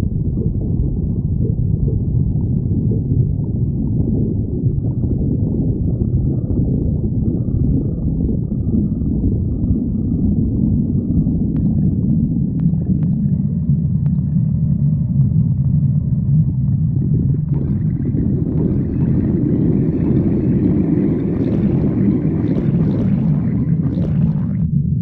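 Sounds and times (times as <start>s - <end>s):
stomach growling: 0.0s - 25.0s.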